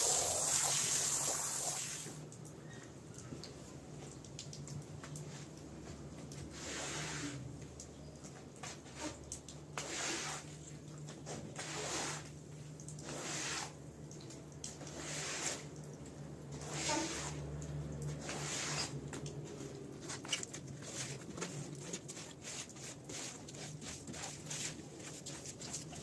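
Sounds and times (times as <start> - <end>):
wet strokes of cleaning tool on rug: 6.3 - 7.6, 8.6 - 15.8, 16.5 - 26.0.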